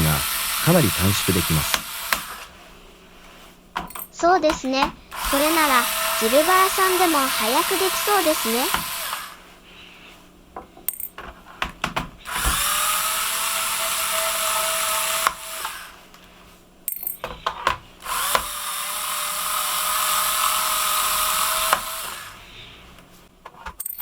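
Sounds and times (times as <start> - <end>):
electric screwdriver motor whine: 0.0 - 2.5, 5.1 - 9.4, 12.3 - 16.0, 18.0 - 22.4.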